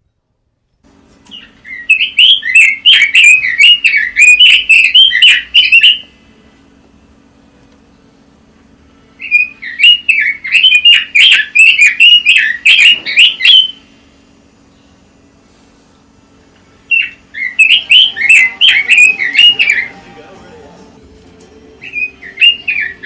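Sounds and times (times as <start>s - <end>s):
bird singing warbling notes: 1.3s - 6.1s, 9.2s - 13.8s, 16.8s - 20.7s, 21.6s - 23.0s.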